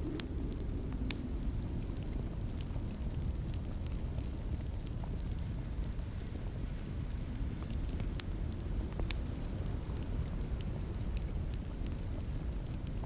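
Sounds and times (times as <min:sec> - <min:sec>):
wood fire crackling and popping: 0:00.0 - 0:13.0.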